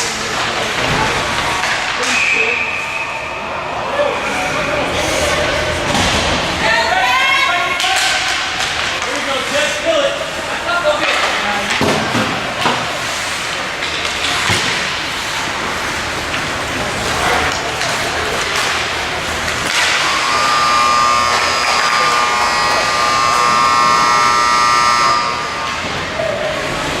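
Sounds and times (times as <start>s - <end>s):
skates scraping ice: 7.6s - 27.0s
hockey stick hitting puck: 7.8s - 9.7s, 11.0s - 24.0s
electric buzzer horn: 20.1s - 25.8s.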